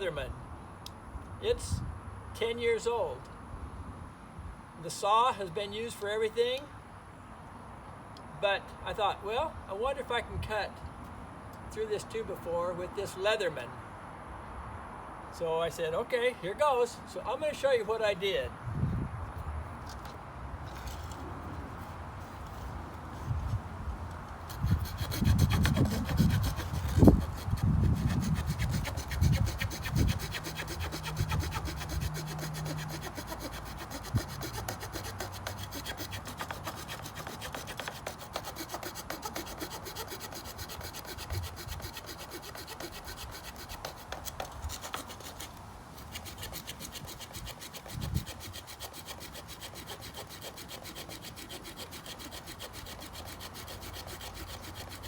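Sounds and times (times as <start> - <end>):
small saw cutting wood: 24.5 - 55.0.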